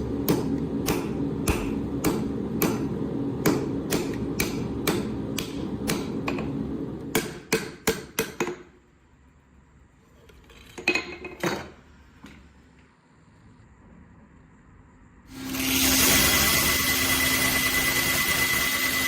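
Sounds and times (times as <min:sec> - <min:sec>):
hammer striking steel on anvil: 0:00.0 - 0:06.5, 0:07.1 - 0:08.6
steady hum: 0:00.0 - 0:07.4.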